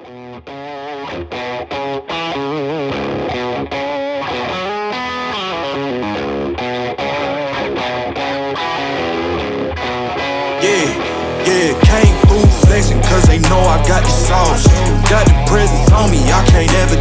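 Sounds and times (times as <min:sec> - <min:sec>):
distorted electric guitar music: 0:00.0 - 0:17.0.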